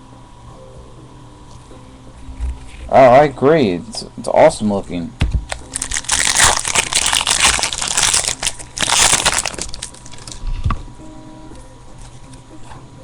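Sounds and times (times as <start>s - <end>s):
wrapper tearing and crumpling: 5.5s - 10.4s.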